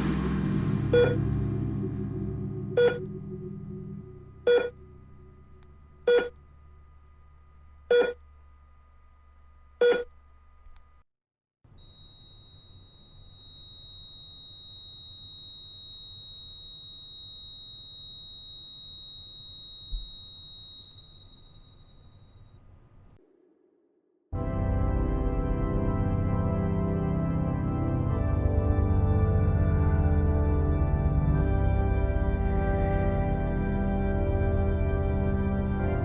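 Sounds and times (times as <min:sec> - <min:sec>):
long high-pitched tone: 0:00.0 - 0:08.9, 0:11.8 - 0:22.6
low hum: 0:00.0 - 0:11.0
short electronic beeps: 0:00.9 - 0:01.2, 0:02.7 - 0:05.4, 0:06.0 - 0:06.4, 0:07.9 - 0:08.2.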